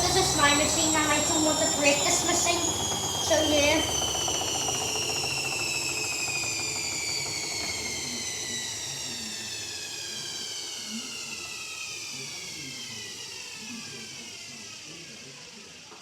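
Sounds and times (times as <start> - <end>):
washing machine drum whine: 0.0 - 11.9.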